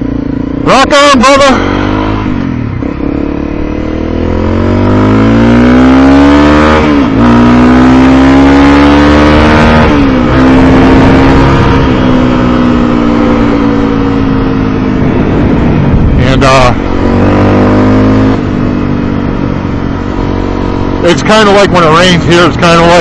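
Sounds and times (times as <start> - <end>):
motorcycle engine accelerating: 0.0 - 23.0.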